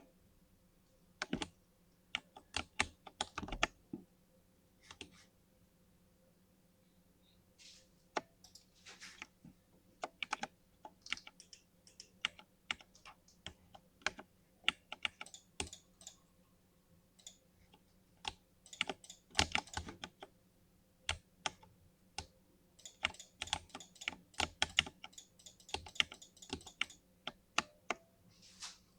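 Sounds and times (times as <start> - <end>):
mechanical keyboard keystroke clacks: 18.7 - 20.2, 22.8 - 27.0.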